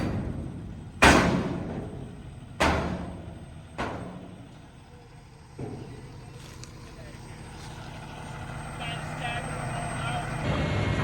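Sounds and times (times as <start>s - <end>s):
heavy booming thuds: 0.0s - 4.8s, 5.4s - 6.4s
truck engine running: 0.0s - 11.0s.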